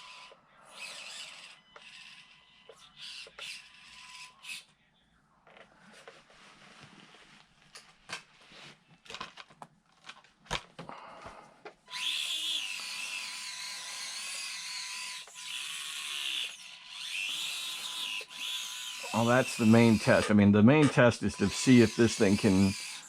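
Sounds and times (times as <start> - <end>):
small electric motor whining: 0.0 - 4.7, 11.9 - 23.0.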